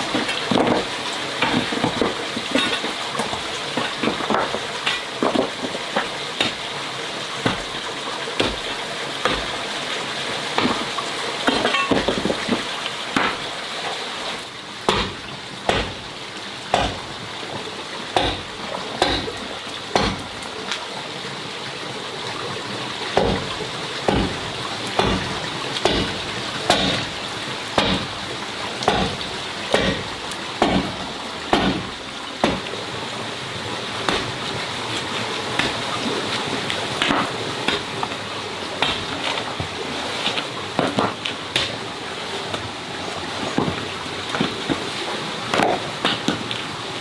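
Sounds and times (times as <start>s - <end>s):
sharp repeating knocks: 14.9s - 16.0s, 16.7s - 17.1s, 23.2s - 23.5s, 24.1s - 24.4s, 25.0s - 27.1s, 27.8s - 28.1s, 28.9s - 32.7s.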